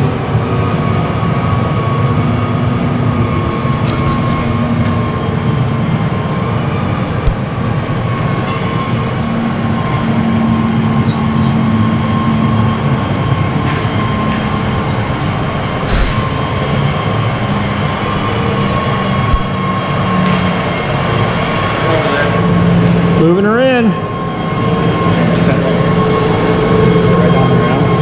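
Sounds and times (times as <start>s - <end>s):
tractor engine running: 3.2s - 10.0s, 12.1s - 21.6s
machine knocks and rattles: 15.8s - 18.5s.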